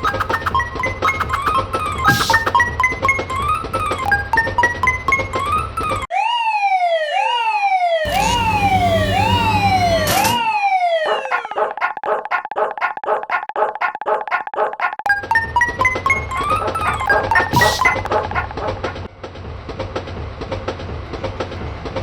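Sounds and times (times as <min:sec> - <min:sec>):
piano music: 0:00.0 - 0:06.1, 0:15.1 - 0:19.1
quick ringing alarm pulse: 0:00.0 - 0:06.1, 0:15.1 - 0:18.7
falling siren-like alarm tone: 0:00.0 - 0:11.7, 0:15.1 - 0:18.9.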